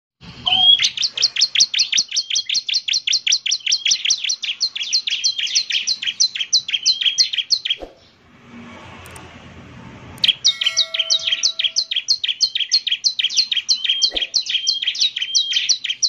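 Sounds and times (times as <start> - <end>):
bird chirping rapidly: 0.4 - 8.2, 10.2 - 16.0.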